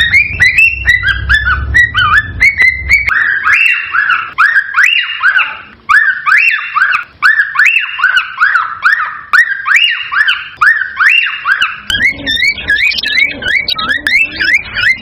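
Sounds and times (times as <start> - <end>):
cockatiels calling: 0.0 - 15.0.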